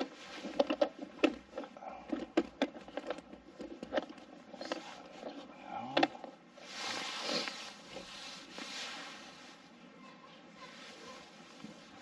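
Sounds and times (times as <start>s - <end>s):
clicks and taps of wiring work: 0.0s - 5.3s.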